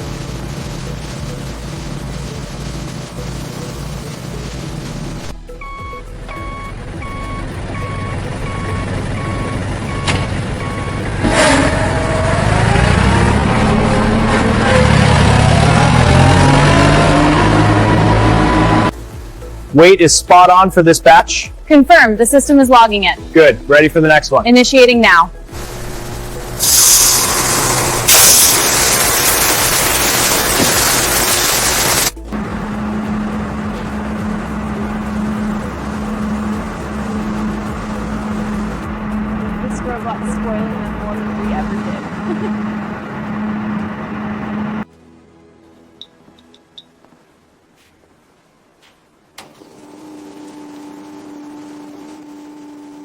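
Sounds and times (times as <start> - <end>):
vehicle engine accelerating: 0.0 - 19.6, 25.5 - 44.9, 49.4 - 53.0
reversing alarm beeping: 5.5 - 12.4
loud steady machine hiss: 25.6 - 39.7.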